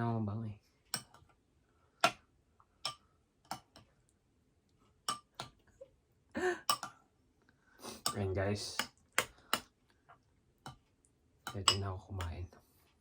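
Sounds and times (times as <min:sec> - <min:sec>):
metal spoon clinking on bowl: 0:11.5 - 0:12.3.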